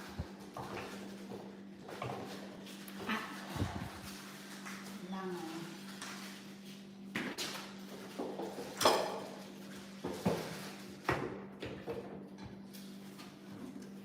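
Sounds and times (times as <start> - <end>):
steady low hum: 0.0 - 7.7.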